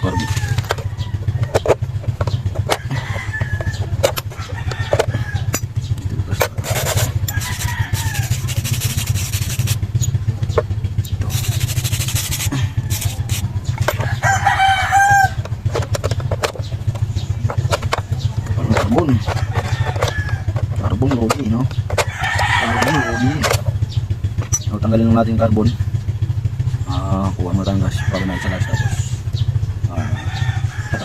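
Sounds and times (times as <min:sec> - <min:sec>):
rooster crowing: 0:00.0 - 0:01.6, 0:02.6 - 0:05.7, 0:06.8 - 0:09.4, 0:12.2 - 0:15.8, 0:18.2 - 0:20.7, 0:22.0 - 0:23.6, 0:27.8 - 0:29.2, 0:29.8 - 0:31.0
steady low hum: 0:00.0 - 0:31.0
scraping noise: 0:06.3 - 0:09.8, 0:11.2 - 0:13.5.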